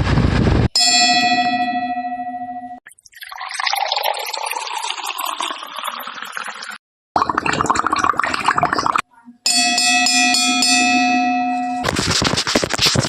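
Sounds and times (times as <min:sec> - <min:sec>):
glass struck and ringing: 0:00.8 - 0:02.8, 0:09.5 - 0:11.8
water boiling and bubbling: 0:02.8 - 0:09.2
water gurgling: 0:02.8 - 0:09.4.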